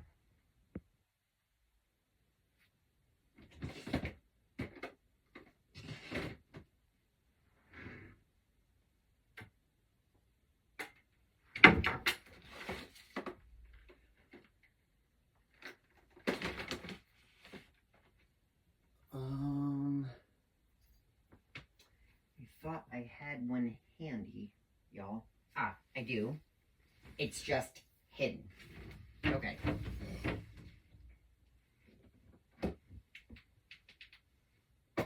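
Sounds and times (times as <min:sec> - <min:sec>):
rummaging knocks and clatters: 0:15.5 - 0:18.2.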